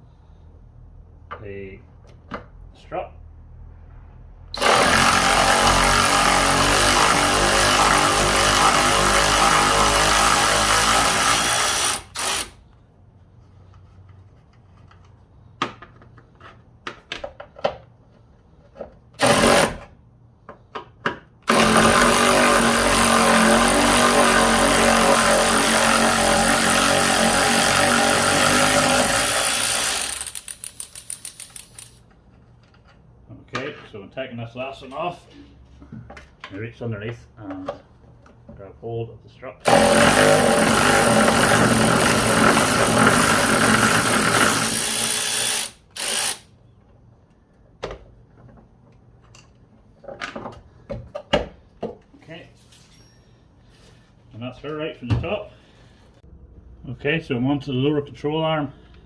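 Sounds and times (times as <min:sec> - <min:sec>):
impact wrench running: 0:04.5 - 0:12.6, 0:19.2 - 0:19.9, 0:21.4 - 0:32.0, 0:39.6 - 0:46.5.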